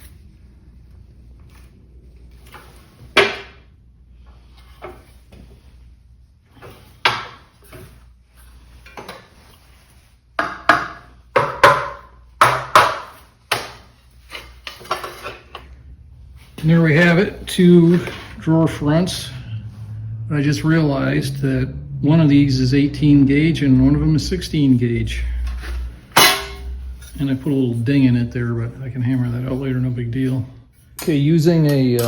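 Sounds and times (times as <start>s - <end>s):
sheet steel clanking: 24.2s - 27.8s.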